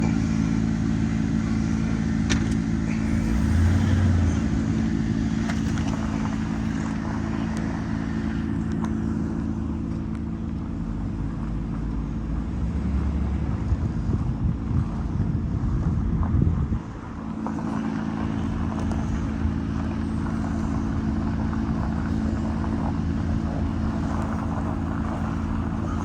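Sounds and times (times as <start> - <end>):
vehicle engine humming: 0.0 - 26.0.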